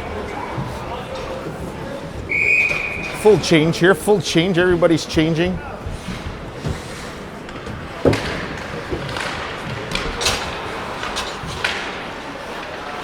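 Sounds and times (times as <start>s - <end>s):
hockey sticks and puck hitting boards: 2.6s - 13.0s.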